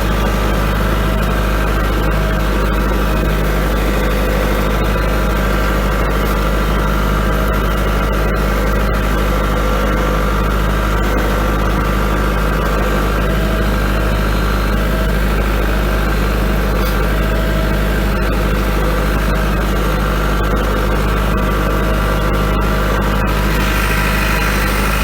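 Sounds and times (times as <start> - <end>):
tractor diesel engine running: 0.0 - 25.0.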